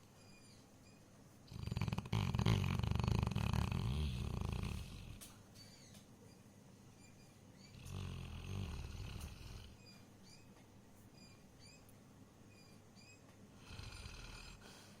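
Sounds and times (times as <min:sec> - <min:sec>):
dog snoring: 0:01.5 - 0:05.3, 0:07.7 - 0:09.8, 0:13.6 - 0:14.9.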